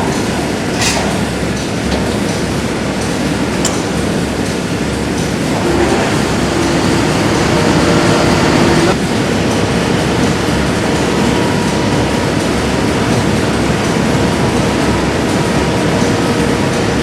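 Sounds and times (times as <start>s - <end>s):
industrial machinery rumble: 2.1s - 9.2s
faint steady hum: 5.5s - 9.0s.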